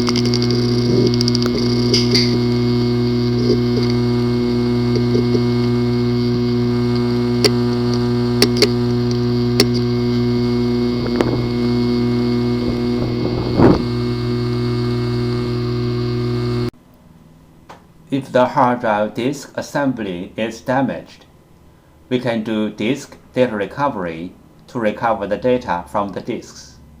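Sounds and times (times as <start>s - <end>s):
loud rattle: 0.0s - 5.7s
sharp clicks: 0.0s - 11.8s
steady electric hum: 0.0s - 17.4s.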